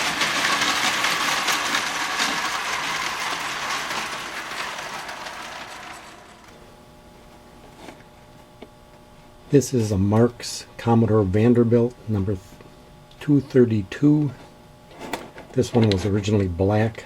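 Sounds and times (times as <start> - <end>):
clockwork toy motor whirring: 0.0 - 6.5.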